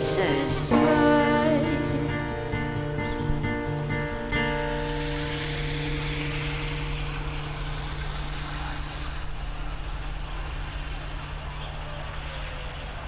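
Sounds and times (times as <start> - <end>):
held guitar chord: 0.0 - 9.9
low drone with hiss: 0.0 - 13.0.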